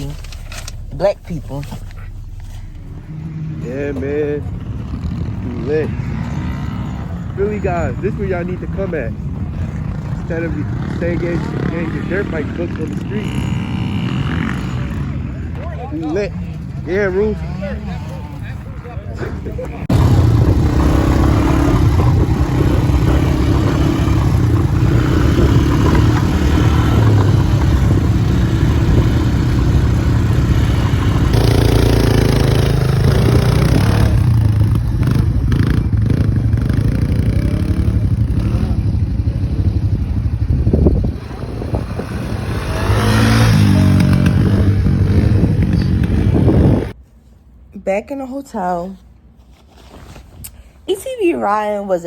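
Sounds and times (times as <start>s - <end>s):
atv engines rumbling and revving: 0.0s - 47.0s.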